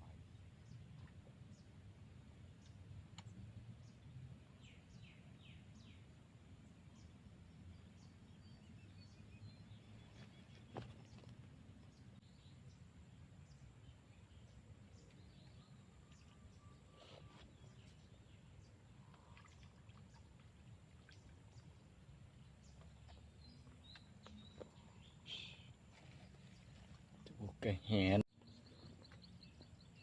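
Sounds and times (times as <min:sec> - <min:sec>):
faint bird chirps: 0:13.4 - 0:20.3, 0:22.6 - 0:30.0.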